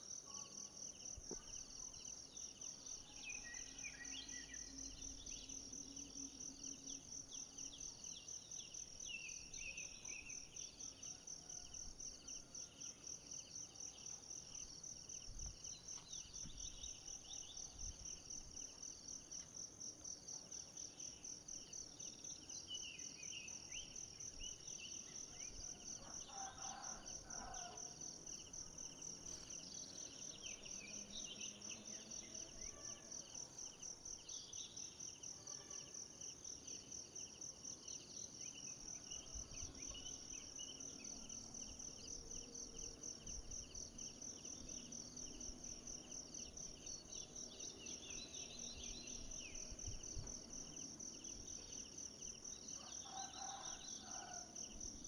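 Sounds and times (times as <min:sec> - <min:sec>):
insects trilling: 0:20.6 - 0:55.0.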